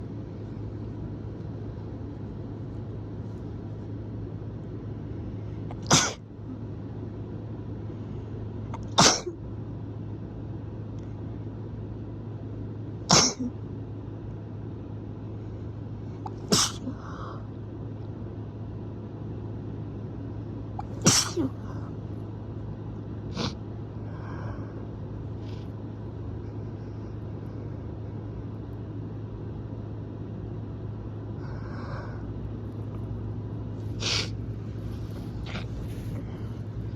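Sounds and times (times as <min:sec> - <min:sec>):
low background hum: 0:00.0 - 0:36.9
person sneezing: 0:05.7 - 0:06.2, 0:08.8 - 0:09.4, 0:13.1 - 0:13.6, 0:16.2 - 0:17.2, 0:20.8 - 0:21.9, 0:33.9 - 0:34.4.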